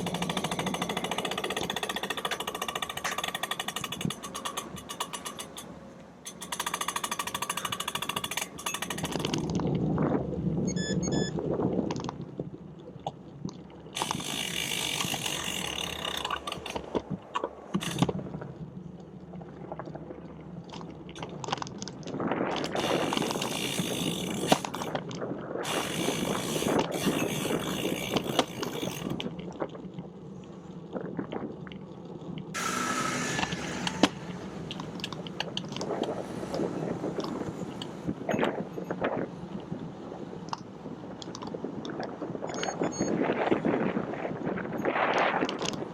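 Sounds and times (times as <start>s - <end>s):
road rumble: 0.0s - 45.9s
bicycle freewheel ticking: 14.0s - 16.5s, 22.8s - 24.9s, 25.7s - 29.2s
wind hiss on microphone: 41.6s - 45.9s.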